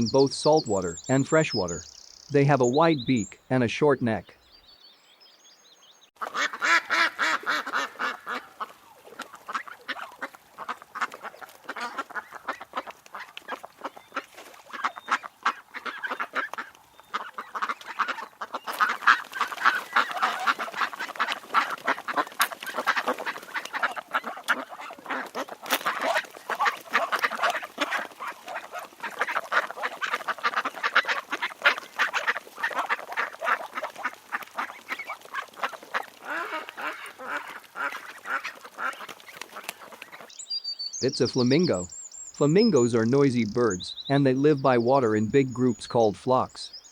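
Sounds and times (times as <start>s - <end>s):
ducks quacking: 0.0s - 4.3s, 6.2s - 40.3s, 41.0s - 46.7s.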